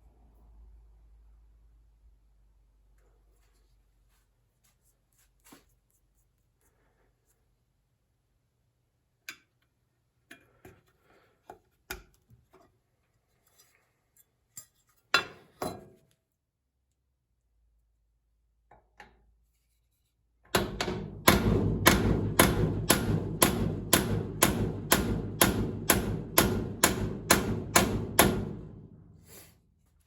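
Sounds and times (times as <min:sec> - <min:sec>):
tools and parts clicking and clinking: 0:13.5 - 0:16.2.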